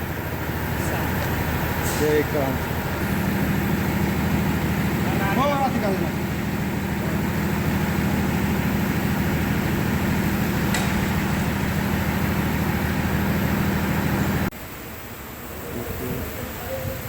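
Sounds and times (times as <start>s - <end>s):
low machine hum: 0.0s - 17.0s
sharp click: 10.7s - 11.0s.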